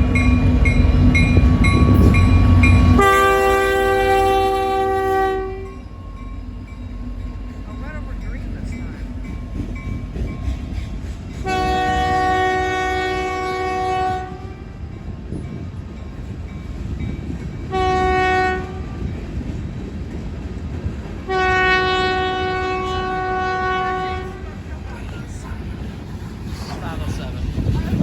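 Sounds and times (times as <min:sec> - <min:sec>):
freight train rumbling: 0:00.0 - 0:28.0
locomotive air horn blasts: 0:02.8 - 0:05.8, 0:11.4 - 0:14.6, 0:17.7 - 0:19.0, 0:21.3 - 0:24.5.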